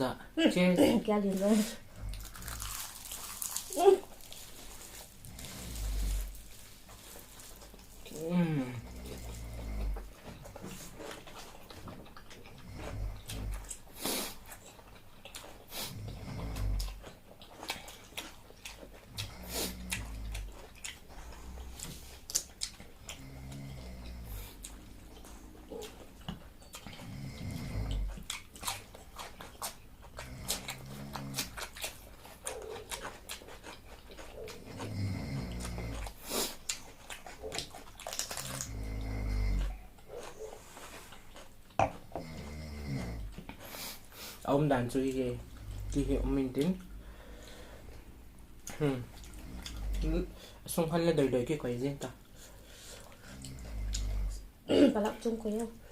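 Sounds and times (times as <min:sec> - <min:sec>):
snoring: 0:05.2 - 0:06.4, 0:08.4 - 0:10.1, 0:15.9 - 0:16.9, 0:19.2 - 0:20.4, 0:23.1 - 0:24.6, 0:27.0 - 0:28.1, 0:30.2 - 0:31.6, 0:34.8 - 0:36.3, 0:38.5 - 0:39.8, 0:42.2 - 0:43.3, 0:53.3 - 0:54.4
chewing clicks and taps: 0:24.6 - 0:27.0.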